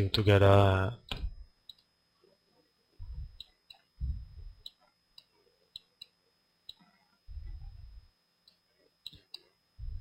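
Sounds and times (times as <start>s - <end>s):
computer mouse clicking: 8.5s - 9.5s.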